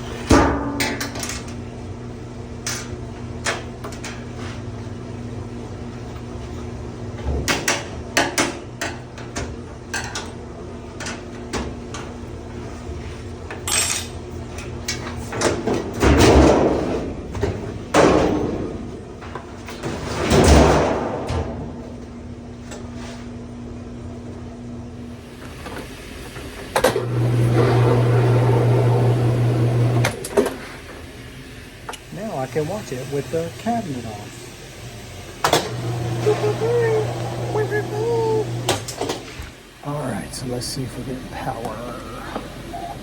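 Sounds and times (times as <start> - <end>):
steady low hum: 27.5 - 43.0.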